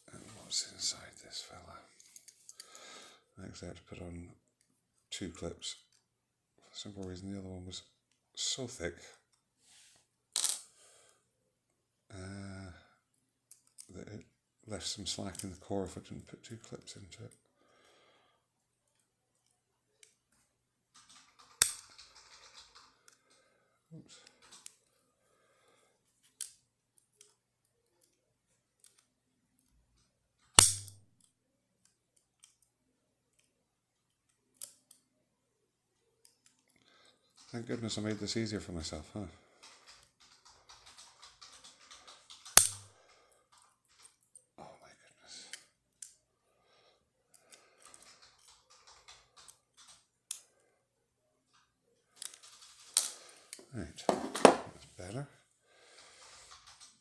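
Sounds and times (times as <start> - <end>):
small metal clicks of lock and tools: 13.5 - 13.9, 21.4 - 22.0, 30.5 - 32.7, 34.3 - 35.0, 42.4 - 42.9
sharp metallic snap with ring: 30.6 - 31.0, 42.6 - 42.8
small metal clicks and scrapes: 39.6 - 44.4, 51.5 - 53.6.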